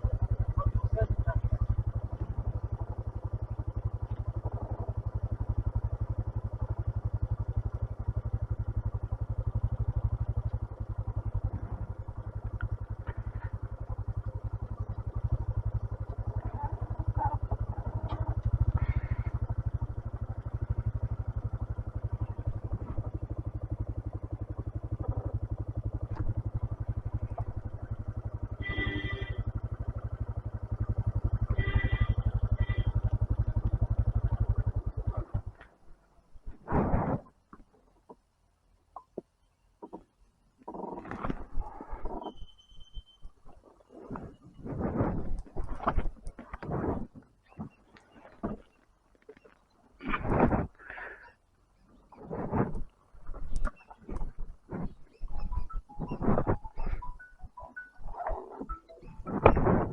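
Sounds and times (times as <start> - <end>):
motorcycle engine running: 0.0 - 59.9
short high-pitched tones: 55.2 - 59.5.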